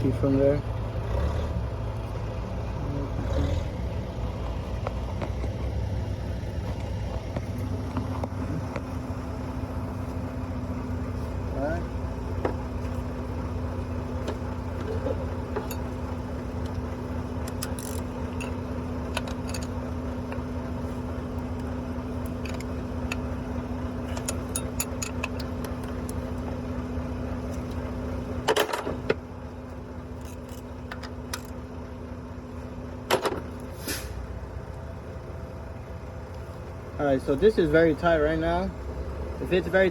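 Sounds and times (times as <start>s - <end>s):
low machine hum: 0.0s - 39.9s
metal tools clinking: 14.8s - 16.0s, 17.5s - 19.8s, 24.0s - 26.2s, 30.1s - 31.6s.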